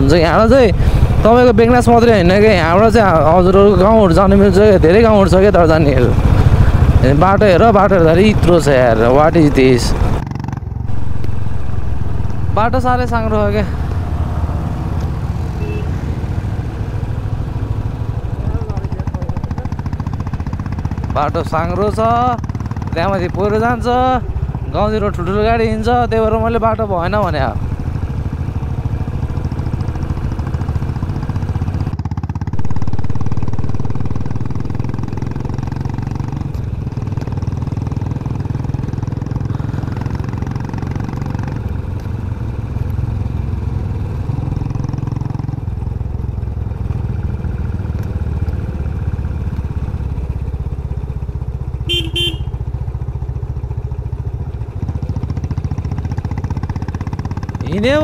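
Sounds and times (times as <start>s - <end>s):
motorcycle engine running: 0.0s - 58.0s
short horn beep: 15.6s - 16.0s, 51.9s - 52.6s.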